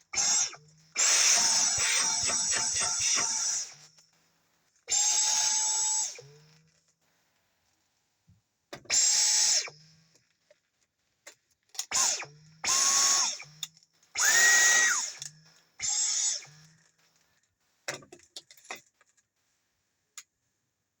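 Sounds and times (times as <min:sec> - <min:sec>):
vacuum motor whine: 0:14.2 - 0:15.3.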